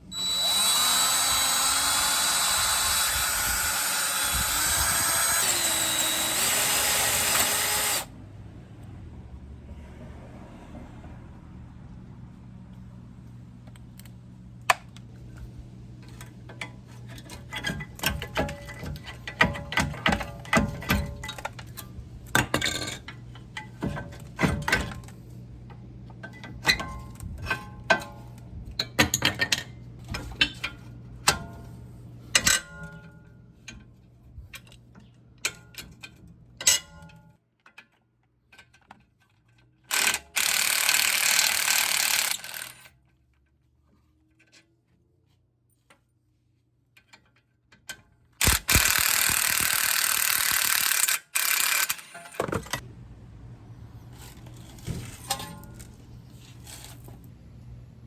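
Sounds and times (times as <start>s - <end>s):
steel tools clinking: 48.4s - 52.8s.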